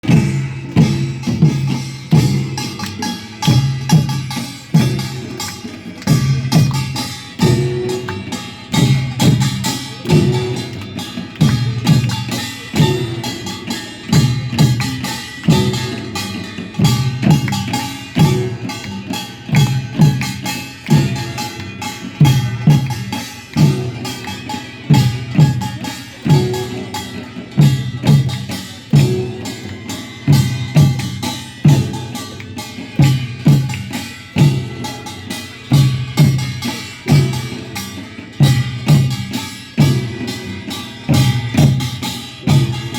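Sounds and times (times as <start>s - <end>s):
metal percussion ringing: 0.0s - 42.9s.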